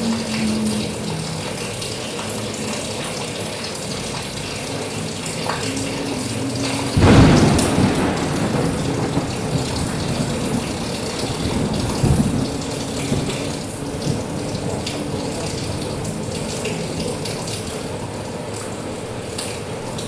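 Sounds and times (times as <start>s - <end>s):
heavy rain: 0.0s - 20.0s
thunder clap and rumbling: 5.0s - 20.0s.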